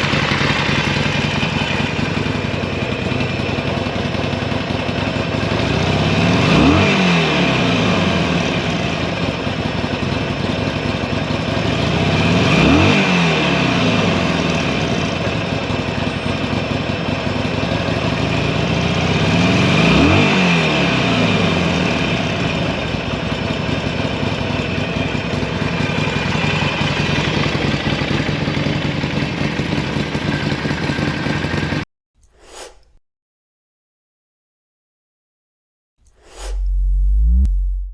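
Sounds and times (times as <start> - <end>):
motorcycle engine idling: 0.0 - 20.2, 20.9 - 31.8
short faint sound: 36.1 - 37.9
throttle blips: 36.3 - 37.9.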